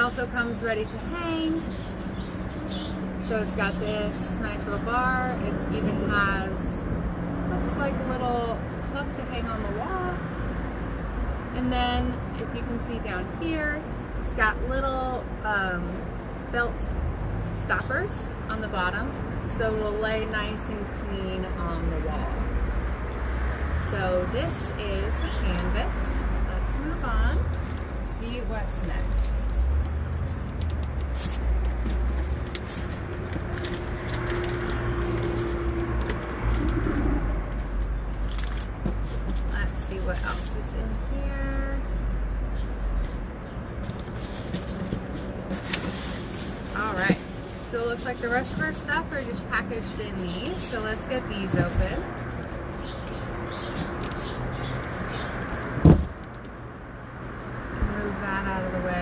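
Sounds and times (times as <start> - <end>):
packaging rustling: 31.2 - 40.4.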